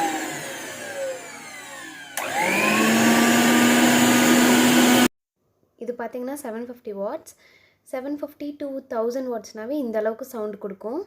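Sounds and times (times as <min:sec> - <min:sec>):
mixer grinder motor whine: 0:00.0 - 0:05.1.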